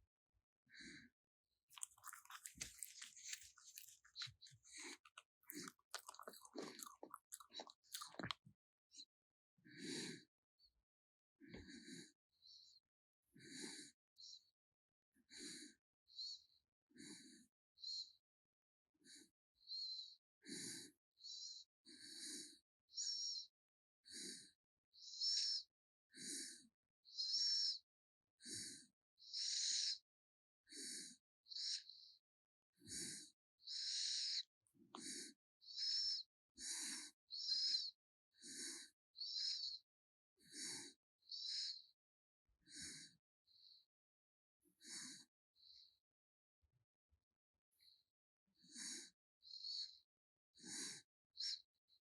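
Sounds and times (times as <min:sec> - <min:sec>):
wet mouth clicks and smacks: 0:01.7 - 0:08.5.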